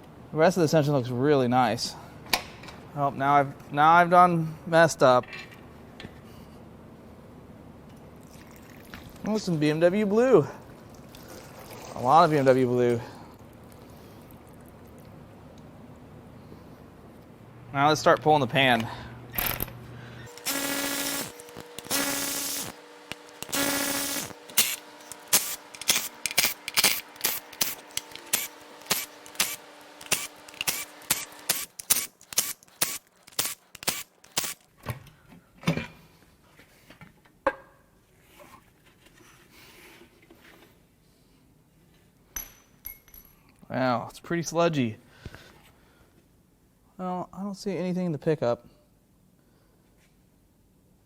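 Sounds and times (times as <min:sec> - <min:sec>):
power tool whirring: 0:19.3 - 0:34.6.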